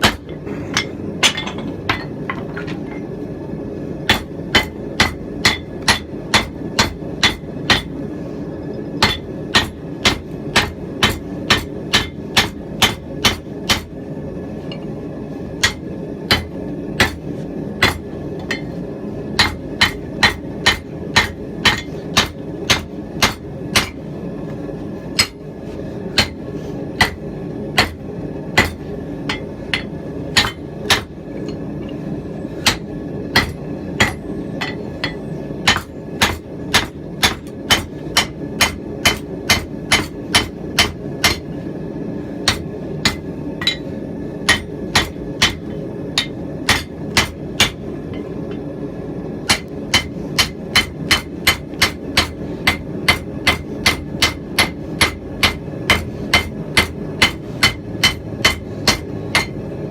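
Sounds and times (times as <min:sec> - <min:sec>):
hammer striking steel on anvil: 0:00.0 - 0:02.7, 0:04.1 - 0:08.0, 0:09.0 - 0:13.9, 0:15.6 - 0:17.2, 0:17.8 - 0:18.8, 0:19.4 - 0:24.0, 0:25.1 - 0:25.4, 0:26.1 - 0:26.4, 0:27.0 - 0:27.2, 0:27.8 - 0:28.0, 0:28.6 - 0:31.6, 0:32.6 - 0:41.5, 0:42.4 - 0:48.3, 0:49.4 - 0:59.6
steady low rumble: 0:00.0 - 0:59.9.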